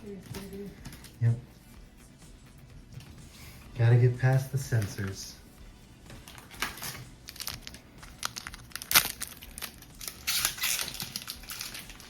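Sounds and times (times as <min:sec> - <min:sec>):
foil pack crinkling and tearing: 0:06.3 - 0:12.0.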